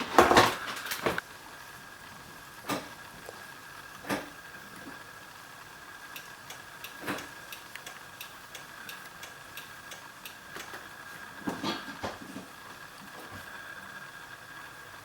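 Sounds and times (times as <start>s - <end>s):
turn signal ticking: 6.1s - 10.7s.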